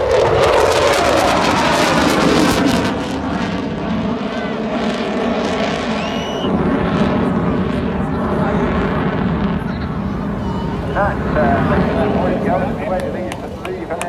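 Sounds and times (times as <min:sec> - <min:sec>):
aircraft engine drone: 0:00.0 - 0:14.0
rising whistle-like chirp: 0:05.9 - 0:06.6.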